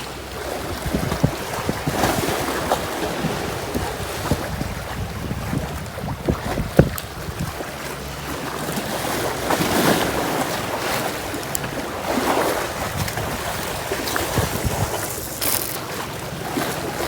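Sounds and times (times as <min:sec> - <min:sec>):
sea waves washing ashore: 0:00.0 - 0:17.0
wind buffeting microphone: 0:00.5 - 0:07.8, 0:11.0 - 0:16.5.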